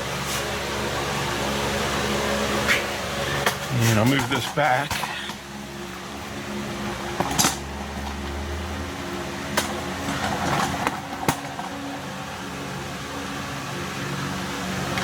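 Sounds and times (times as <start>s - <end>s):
steady mechanical hum: 0.0s - 15.0s
objects clicking and knocking: 7.1s - 8.2s, 9.5s - 12.1s.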